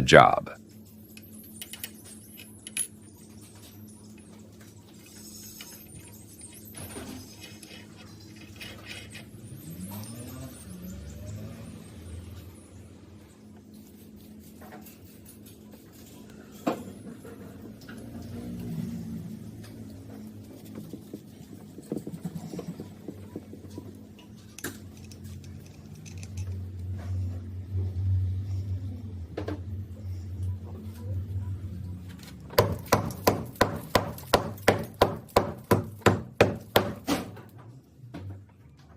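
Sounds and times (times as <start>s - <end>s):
faint knocks and clatter: 19.5s - 27.2s
hammer striking: 32.5s - 37.3s.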